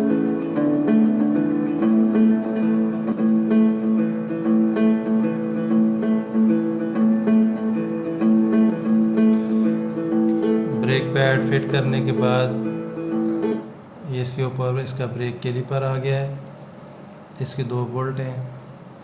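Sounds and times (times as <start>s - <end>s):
plucked acoustic guitar: 0.0s - 13.9s.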